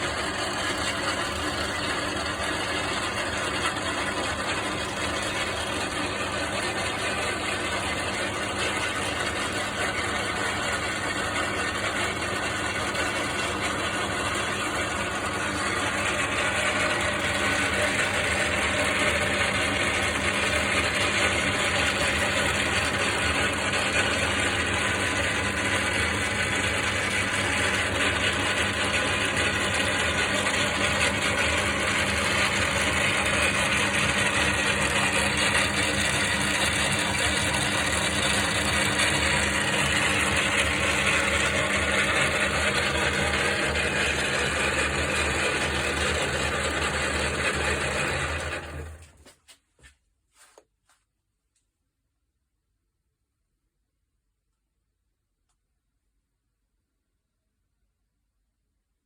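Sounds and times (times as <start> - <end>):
metal lathe rattling: 26.2 - 49.0.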